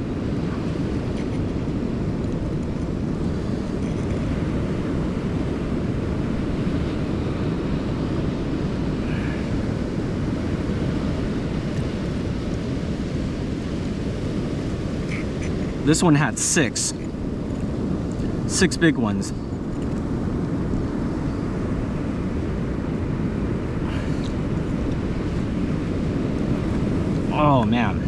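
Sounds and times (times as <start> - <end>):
ocean surf: 0.0 - 28.0
wind rumble on microphone: 0.0 - 28.0.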